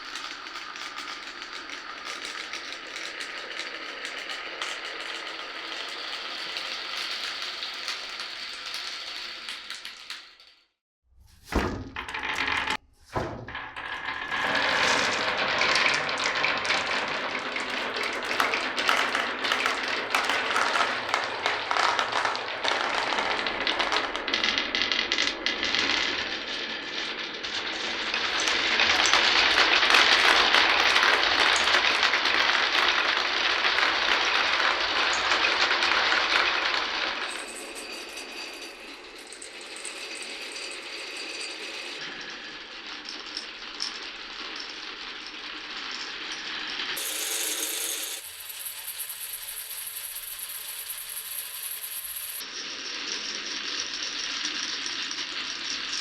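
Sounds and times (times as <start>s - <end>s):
marbles clattering down wooden run: 0.0s - 10.6s, 12.0s - 12.8s, 13.6s - 56.0s.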